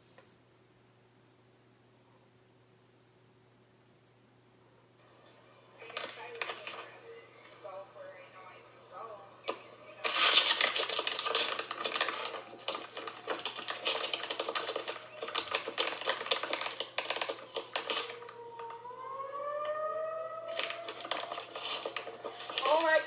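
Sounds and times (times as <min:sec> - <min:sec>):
rapid clicking and rattling: 0:09.5 - 0:18.4, 0:20.5 - 0:23.0
tornado siren winding up: 0:11.9 - 0:23.0.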